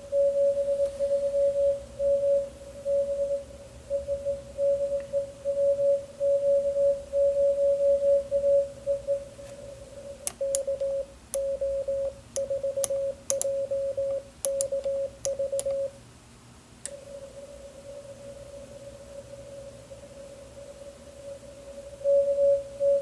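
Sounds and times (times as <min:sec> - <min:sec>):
morse code tones: 0:00.0 - 0:16.0
key clicks: 0:10.2 - 0:11.5, 0:12.4 - 0:15.8.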